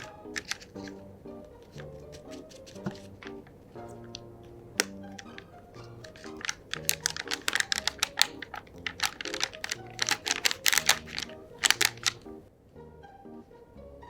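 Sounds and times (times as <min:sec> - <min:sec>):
light background music: 0:00.0 - 0:14.0
sharp clicks: 0:04.8 - 0:12.3.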